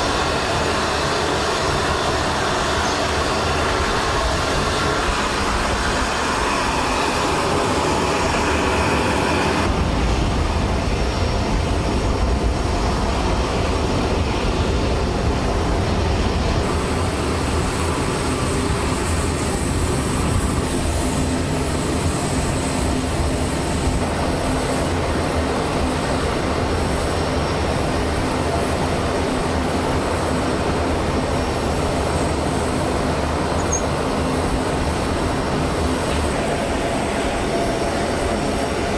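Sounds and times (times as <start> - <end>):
loud machinery rumble: 0.0 - 38.9.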